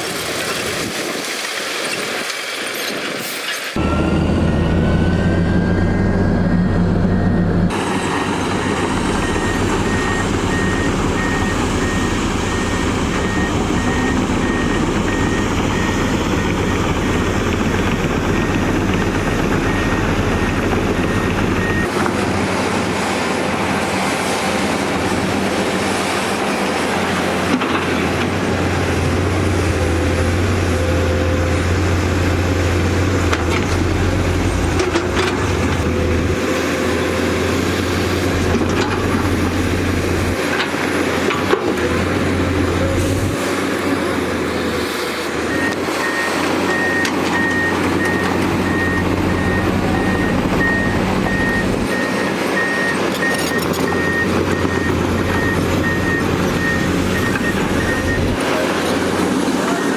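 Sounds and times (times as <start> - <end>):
diesel machinery rumbling: 3.8 - 59.9.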